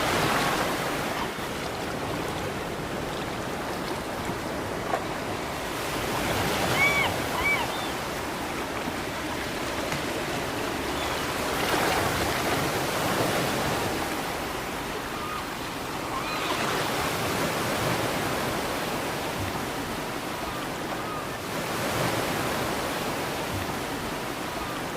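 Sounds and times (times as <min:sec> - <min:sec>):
ocean waves breaking: 0:00.0 - 0:24.9
seagull calls: 0:06.4 - 0:08.0, 0:15.1 - 0:16.8.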